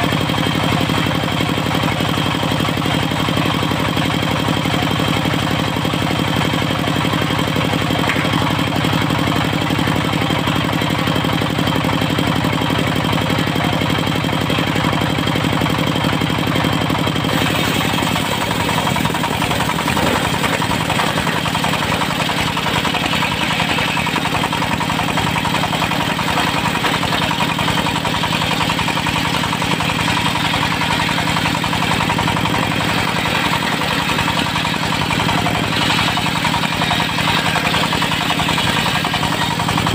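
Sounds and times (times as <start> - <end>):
sawmill diesel engine running: 0.0 - 39.9.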